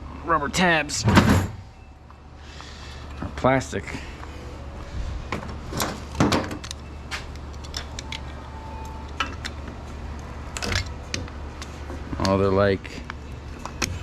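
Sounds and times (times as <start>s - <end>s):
low hum: 0.0s - 3.2s.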